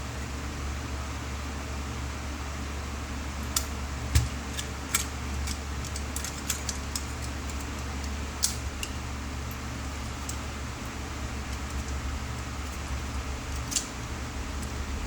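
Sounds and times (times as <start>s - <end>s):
steady low hum: 0.0s - 15.0s
small clicks and taps of tools: 3.4s - 10.4s, 12.6s - 13.9s.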